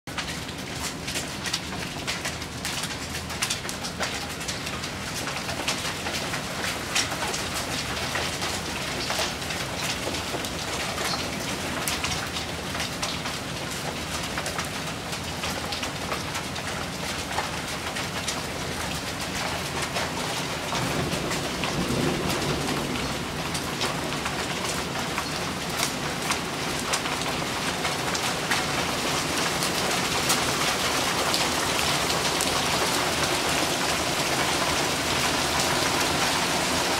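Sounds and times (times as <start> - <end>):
hailstones ticking: 0.1 - 36.9
rain hissing: 20.6 - 36.9.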